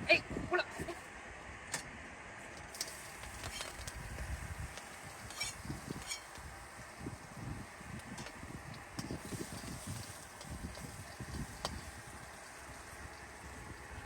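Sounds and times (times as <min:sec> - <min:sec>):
oil sizzling in a pan: 0:02.7 - 0:14.0
utensil clinking on pan: 0:05.3 - 0:06.4.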